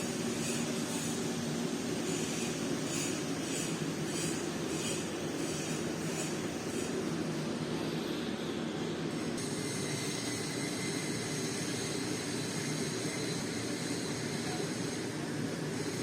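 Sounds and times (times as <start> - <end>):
welding arc hissing: 0.0 - 8.1.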